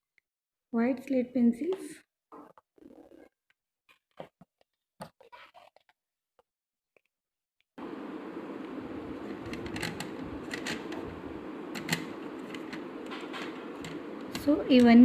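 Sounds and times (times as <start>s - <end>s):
steady background hum: 7.8s - 15.0s
slate pencils clicking together: 9.4s - 11.1s, 11.7s - 15.0s.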